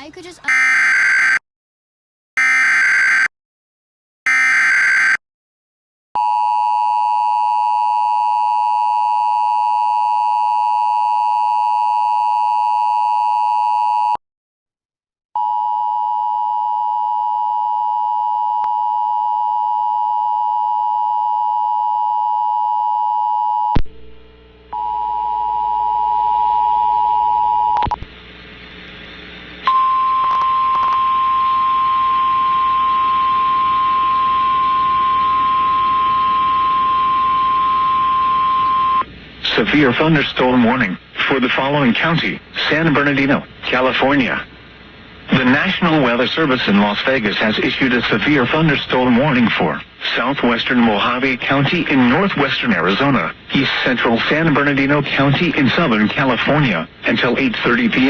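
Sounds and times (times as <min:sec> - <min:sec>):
dull attention tone: 0:00.4 - 0:01.4, 0:02.4 - 0:03.3, 0:04.3 - 0:05.2
two-tone attention signal: 0:00.5 - 0:01.4, 0:02.4 - 0:03.3, 0:04.3 - 0:05.2.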